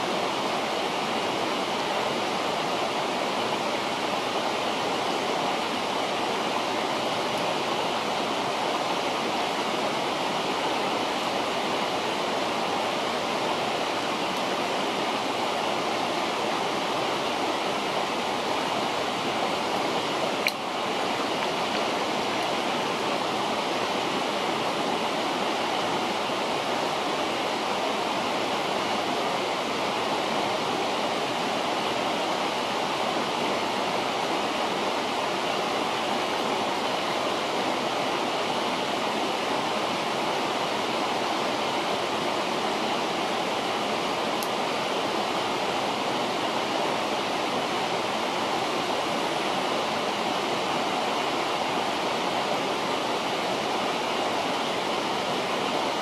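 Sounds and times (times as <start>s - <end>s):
river rushing: 0.0s - 56.0s
faint click: 20.4s - 20.6s.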